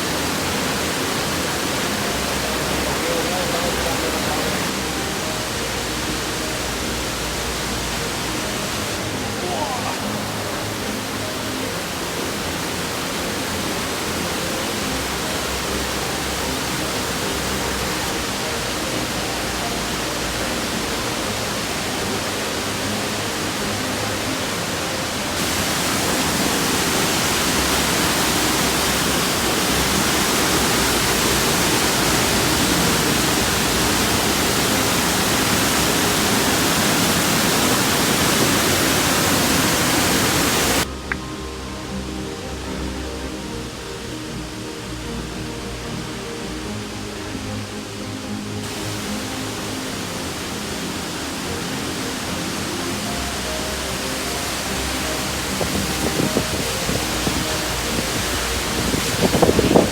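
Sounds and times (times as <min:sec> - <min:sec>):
music: 0:00.0 - 0:59.9
waterfall rushing: 0:00.0 - 0:59.9.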